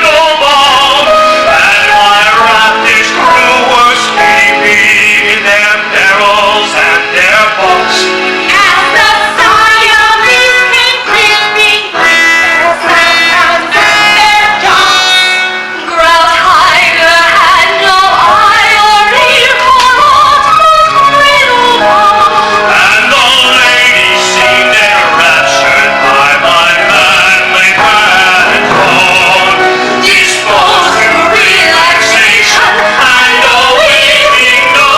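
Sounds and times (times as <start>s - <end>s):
instrumental accompaniment: 0.0s - 34.9s
operatic singing with vibrato: 0.0s - 34.9s.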